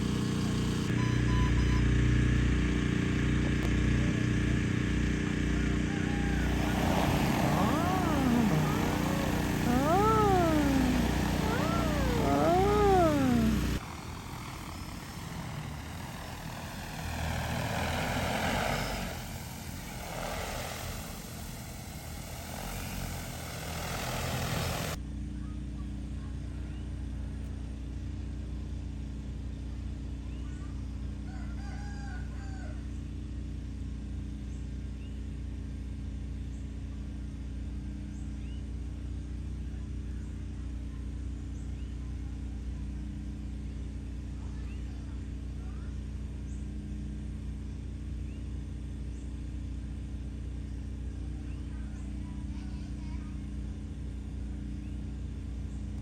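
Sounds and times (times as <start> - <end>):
rooster crowing: 5.9 - 13.8
drone rotors rushing: 6.3 - 13.8
steady low hum: 6.3 - 13.8.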